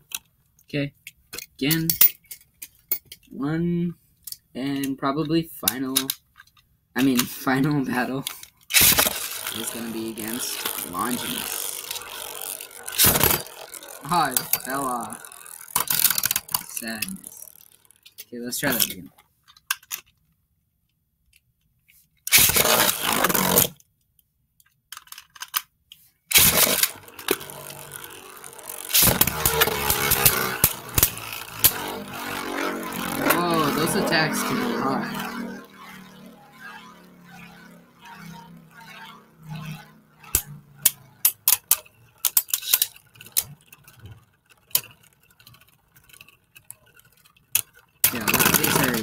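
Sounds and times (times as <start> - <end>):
ripcord pulled from launcher: 7.0 - 17.8, 22.3 - 23.7, 26.3 - 40.6, 48.0 - 49.0
spinning tops whirring and scraping: 7.0 - 19.1, 22.3 - 23.8, 26.3 - 49.0.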